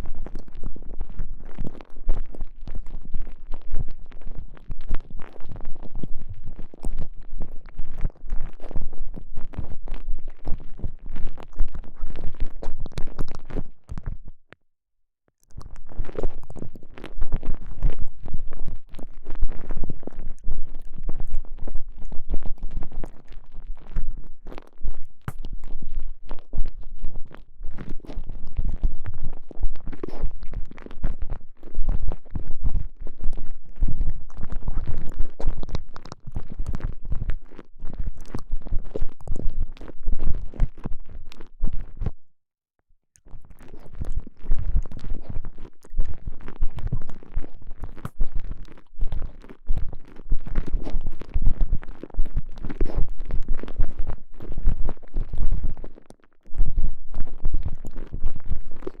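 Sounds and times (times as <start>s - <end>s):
muffled squishing and crackling: 0.0s - 14.4s, 15.4s - 42.2s, 43.2s - 59.0s.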